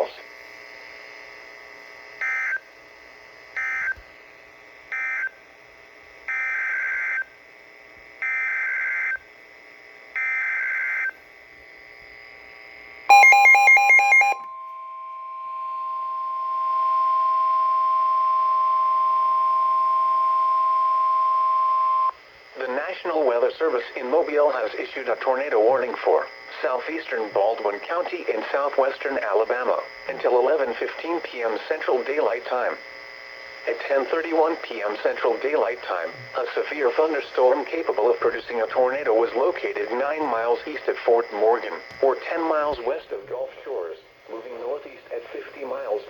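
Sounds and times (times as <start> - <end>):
steady alert tone: 13.1 - 16.6
two-tone data warble bursts: 13.1 - 20.3
loud pulsing beep: 13.1 - 22.1.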